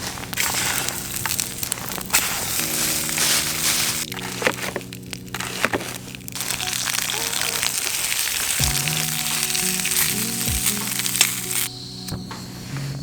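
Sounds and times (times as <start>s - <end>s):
sausages sizzling in a pan: 0.0s - 11.7s
background music chords: 0.0s - 13.0s
sharp fat pops: 0.4s - 11.7s.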